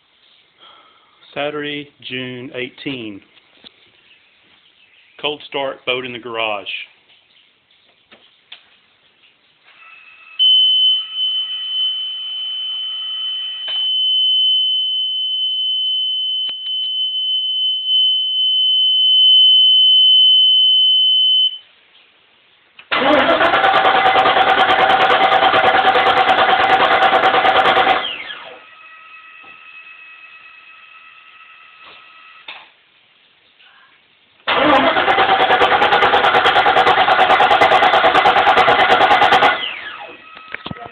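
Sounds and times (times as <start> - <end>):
boat engine starter cranking: 22.9 - 28.0, 34.5 - 39.6.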